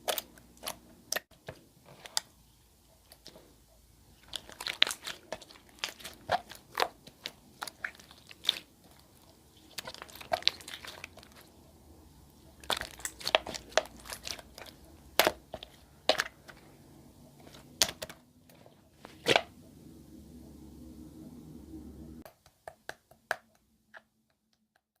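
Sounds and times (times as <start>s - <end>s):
low background hum: 0.0s - 22.2s
slime squishing and popping: 4.2s - 11.5s, 12.6s - 16.6s, 17.4s - 18.2s.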